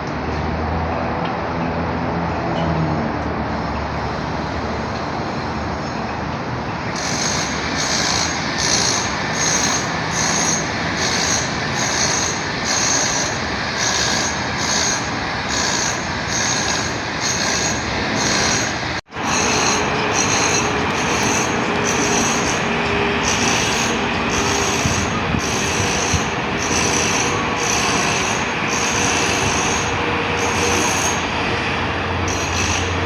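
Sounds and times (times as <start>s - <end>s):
construction machinery rumble: 2.9s - 33.0s
rhythmic high metallic squeal: 7.0s - 31.6s, 32.3s - 33.0s.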